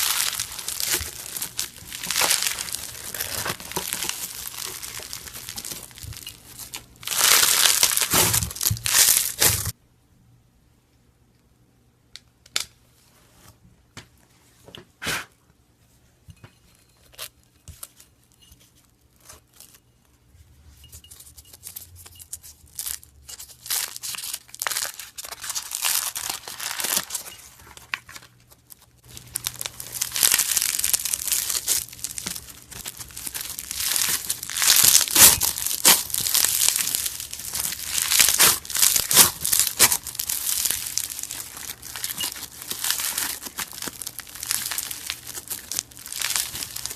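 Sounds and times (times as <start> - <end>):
crumbly material crunching: 0.0 - 9.8, 23.6 - 46.9.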